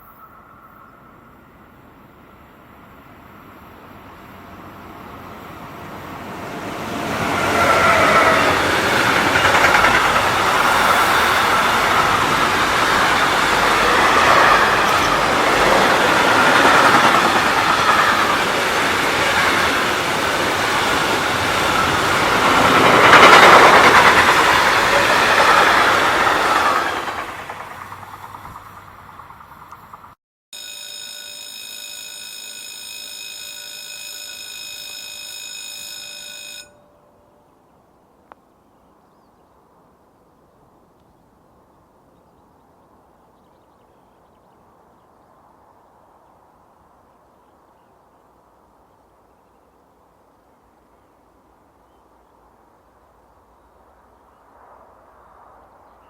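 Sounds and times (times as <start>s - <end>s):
freight train wheels rolling on rails: 0.5s - 30.2s, 31.0s - 36.8s.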